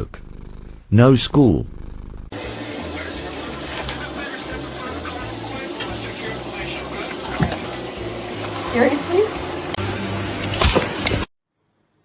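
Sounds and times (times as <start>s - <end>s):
running water rushing: 2.3s - 9.8s
low bass notes: 2.3s - 10.5s.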